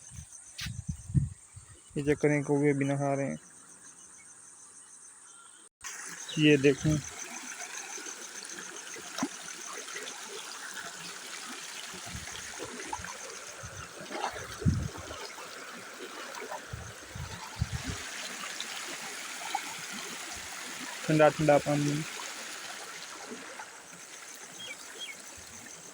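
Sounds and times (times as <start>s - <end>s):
stream trickling: 5.8s - 25.9s.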